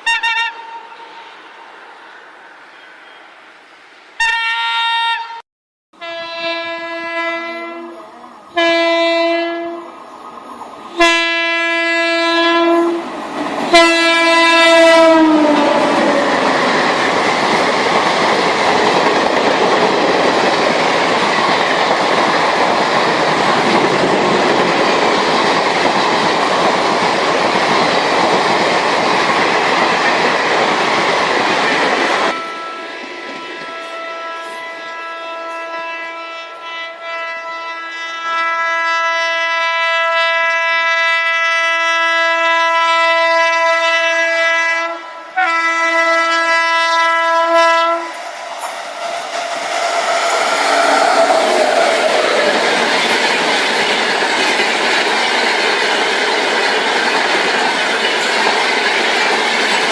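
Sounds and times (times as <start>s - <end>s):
locomotive horn blasts: 0.0s - 1.2s, 4.2s - 5.4s, 6.0s - 9.9s, 11.0s - 13.1s, 13.7s - 16.0s, 32.3s - 48.2s
train passing at speed: 0.0s - 4.5s, 6.0s - 38.6s, 41.5s - 59.9s.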